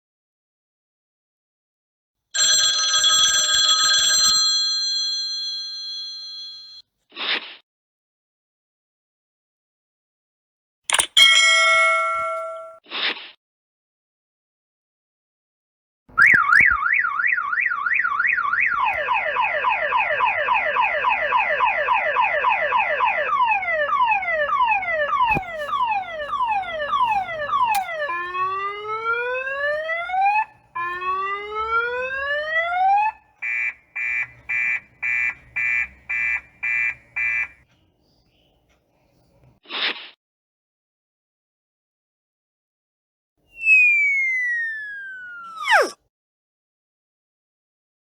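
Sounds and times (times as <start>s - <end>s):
car alarm siren: 16.2s - 37.6s, 43.6s - 45.9s.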